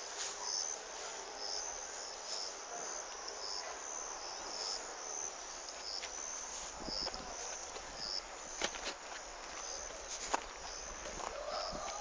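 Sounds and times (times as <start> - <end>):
insects chirping: 0.0 - 12.0
steady outdoor hiss: 0.0 - 12.0.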